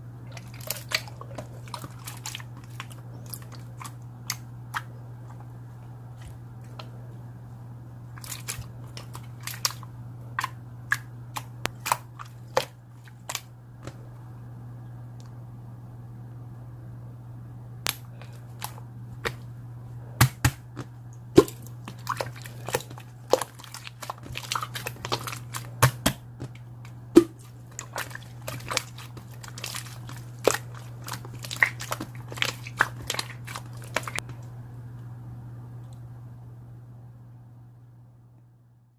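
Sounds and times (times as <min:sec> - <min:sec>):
steady low hum: 0:00.0 - 0:38.9
slime crackling and popping: 0:27.2 - 0:34.2.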